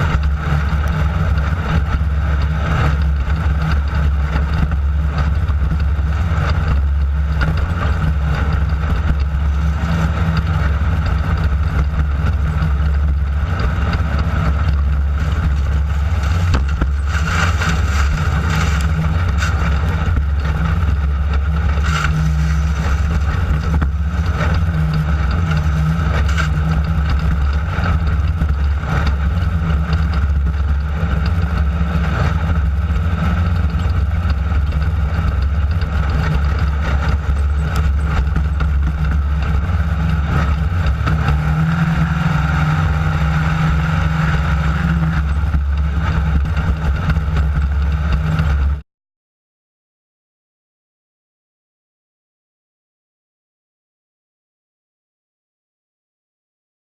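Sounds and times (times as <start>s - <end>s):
buggy engine droning: 0.0s - 48.8s
car knocks and rattles: 3.0s - 31.8s.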